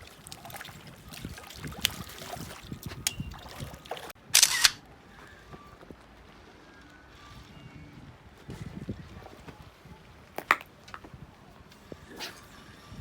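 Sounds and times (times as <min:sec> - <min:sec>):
water splash: 0:00.0 - 0:04.7.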